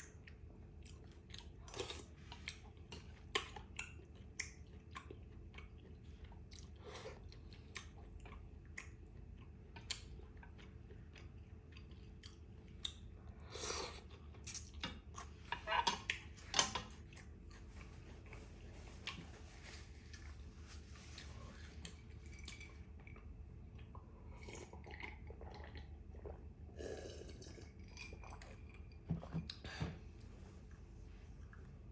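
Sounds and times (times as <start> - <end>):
close chewing with mouth clicks: 0.0 - 16.4
steady low hum: 0.0 - 31.9.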